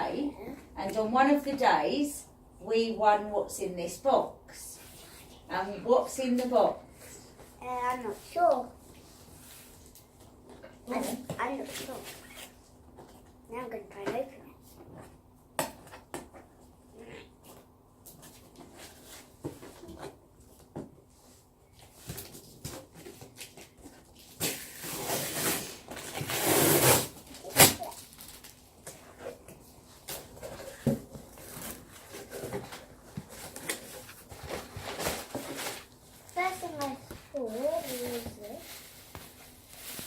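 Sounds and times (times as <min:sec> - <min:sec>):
cardboard parcel being opened: 0:21.9 - 0:40.0.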